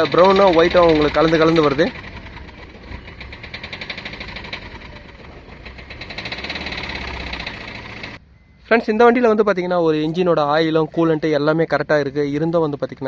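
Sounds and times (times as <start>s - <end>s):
engine idling with knocking clatter: 0.0s - 8.2s.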